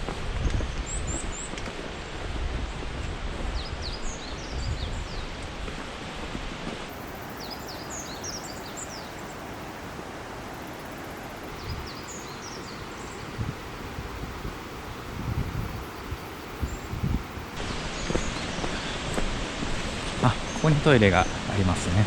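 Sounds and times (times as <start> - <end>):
wind rumble on microphone: 0.0 - 10.1, 11.3 - 22.0
songbird chirping: 3.5 - 5.5, 6.9 - 19.4.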